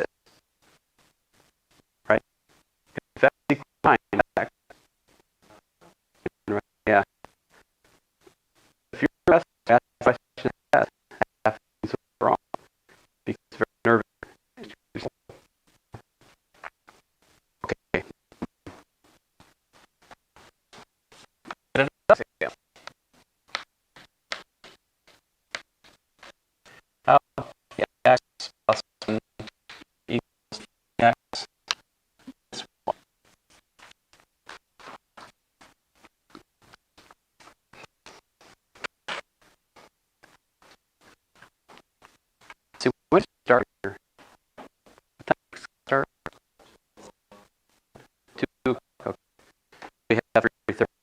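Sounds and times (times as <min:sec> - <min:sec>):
choppy garbled voice: 0:02.9 - 0:07.1, 0:08.2 - 0:17.0, 0:17.6 - 0:22.9, 0:25.8 - 0:33.1, 0:34.5 - 0:49.2
pen scratching while writing: 0:18.0 - 0:26.8, 0:31.3 - 0:42.8, 0:44.2 - 0:48.4.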